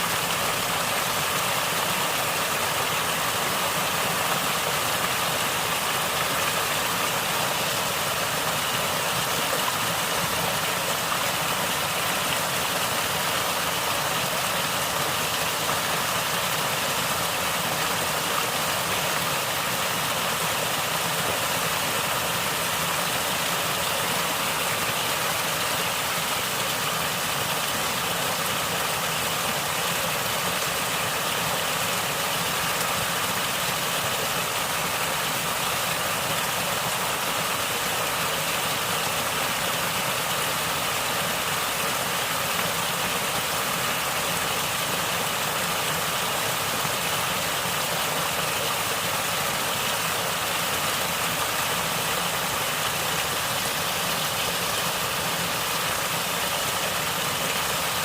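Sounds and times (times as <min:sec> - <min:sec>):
water flowing and gurgling: 0:00.0 - 0:58.0.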